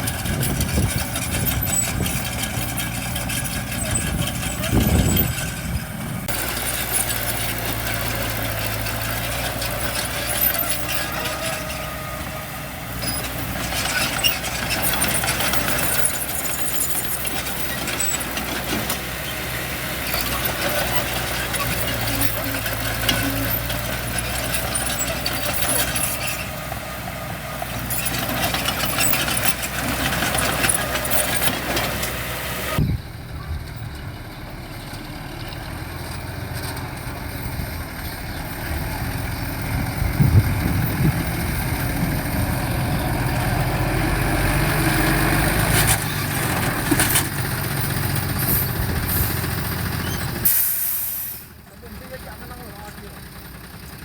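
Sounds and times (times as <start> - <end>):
diesel engines of heavy machinery: 0.0 - 54.0.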